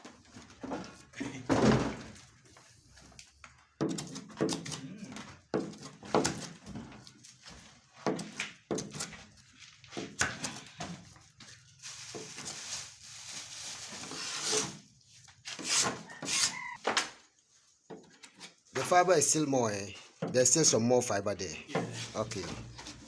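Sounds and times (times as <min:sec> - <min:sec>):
knocks and thuds of hand work: 0:00.5 - 0:02.2, 0:05.3 - 0:07.0, 0:08.0 - 0:09.1.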